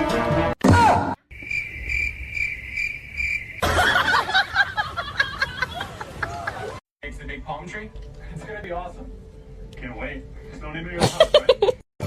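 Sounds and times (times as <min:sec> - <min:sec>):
cricket trilling: 0:01.3 - 0:03.6.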